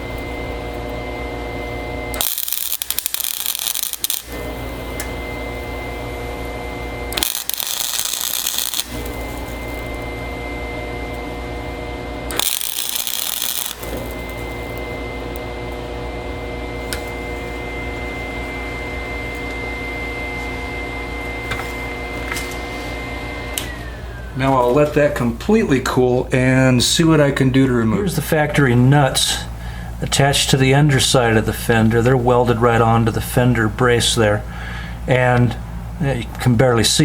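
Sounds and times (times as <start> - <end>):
welder buzzing: 0.0 - 17.4.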